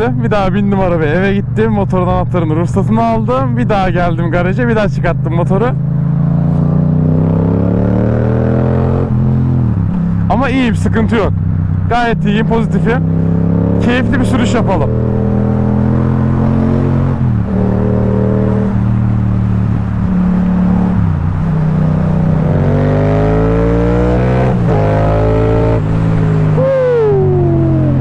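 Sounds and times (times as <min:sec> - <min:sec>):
motorcycle engine revving: 0:05.1 - 0:28.0
falling tone: 0:20.0 - 0:28.0.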